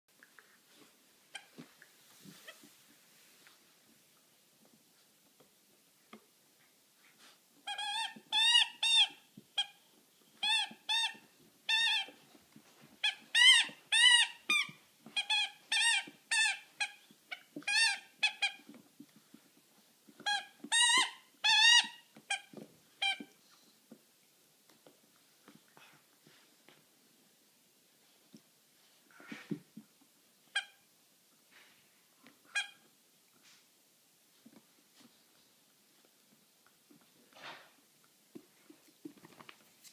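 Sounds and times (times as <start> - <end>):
squeaky rubber toy squeaking: 7.6 - 9.8, 10.4 - 12.2, 13.0 - 18.7, 20.2 - 23.3, 30.5 - 30.8, 32.5 - 32.9.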